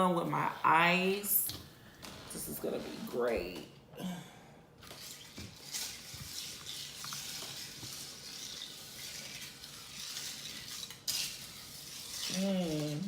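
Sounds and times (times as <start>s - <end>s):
soda fizzing over ice: 4.8s - 13.0s.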